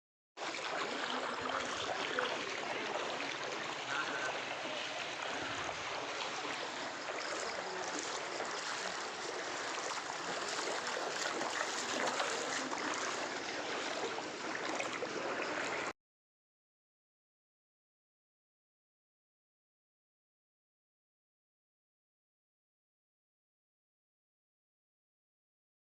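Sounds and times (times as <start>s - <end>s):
floodwater flowing: 0.4s - 15.9s.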